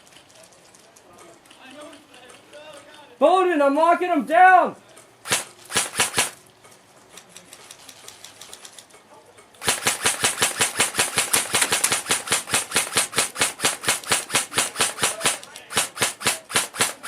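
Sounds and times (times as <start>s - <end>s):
airsoft gun rapid firing: 5.2s - 6.4s, 9.6s - 17.0s
faint scattered shots: 5.2s - 6.5s, 9.6s - 17.0s.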